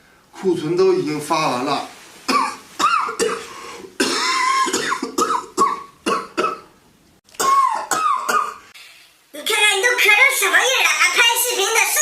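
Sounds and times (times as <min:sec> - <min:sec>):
man coughing hard: 0:02.3 - 0:06.7, 0:07.4 - 0:08.6.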